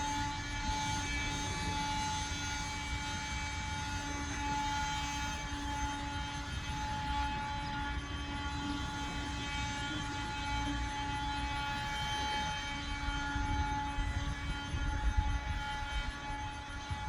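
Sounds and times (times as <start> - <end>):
warning siren steady tone: 0.0 - 17.0.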